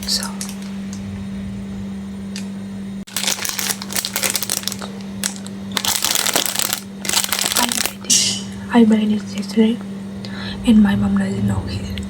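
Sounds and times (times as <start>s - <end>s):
steady low hum: 0.0s - 12.0s
packaging crinkling: 3.1s - 8.0s.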